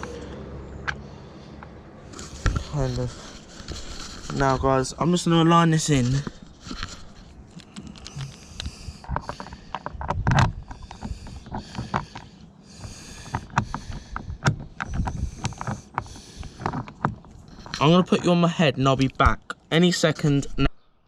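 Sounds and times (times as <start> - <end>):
rustling: 2.1 - 19.2.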